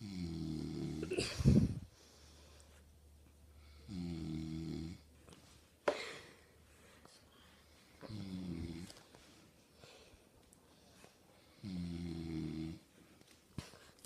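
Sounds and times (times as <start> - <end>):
man snoring: 0.0 - 1.1, 3.8 - 5.0, 11.6 - 12.8.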